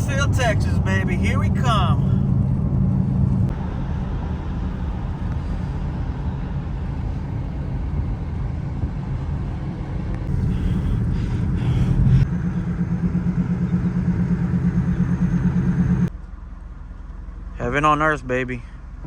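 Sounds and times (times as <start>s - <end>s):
engine running: 0.0s - 19.0s.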